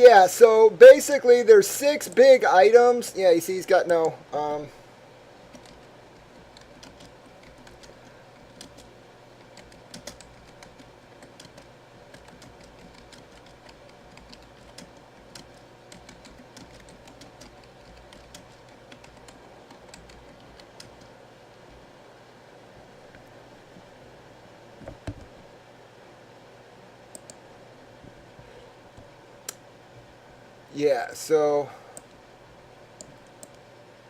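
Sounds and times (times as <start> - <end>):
steady low hum: 0.0 - 34.0
typing on computer keyboard: 5.5 - 21.1.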